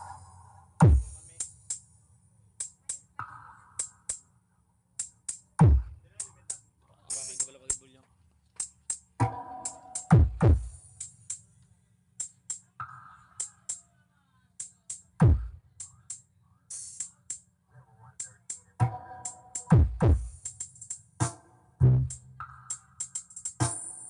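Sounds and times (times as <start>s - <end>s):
hi-hat ticks: 0.0s - 2.0s, 2.6s - 4.3s, 5.0s - 8.0s, 8.6s - 13.9s, 14.6s - 21.4s, 22.1s - 24.0s
deep bass kicks: 0.8s - 1.2s, 5.6s - 6.0s, 10.1s - 10.8s, 15.2s - 15.6s.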